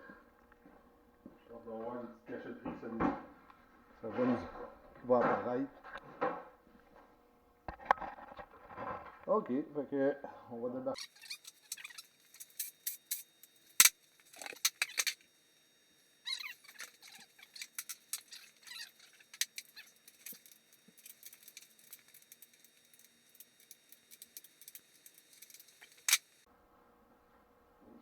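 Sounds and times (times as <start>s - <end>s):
metal tools clinking and rattling: 11.0s - 15.2s, 16.3s - 26.3s.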